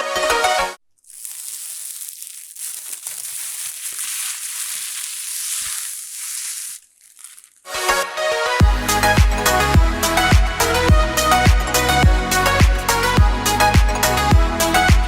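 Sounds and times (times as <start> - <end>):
plastic packaging crinkling: 0.9 - 7.8.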